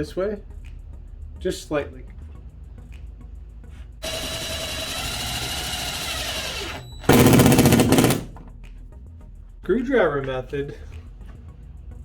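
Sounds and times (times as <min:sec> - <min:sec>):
cordless drill driving anchor: 0:04.0 - 0:08.4.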